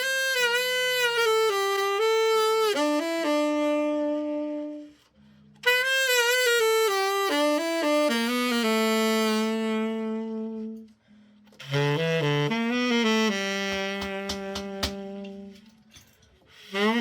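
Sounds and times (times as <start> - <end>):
faint low backing accompaniment: 0.0 - 17.0
tenor saxophone melody: 0.0 - 17.0.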